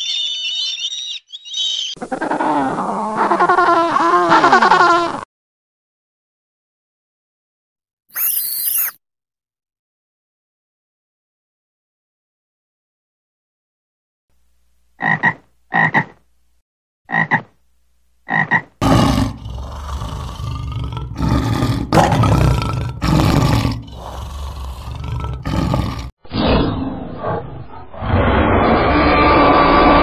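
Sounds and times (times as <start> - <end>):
big cat roaring: 18.8 - 26.1.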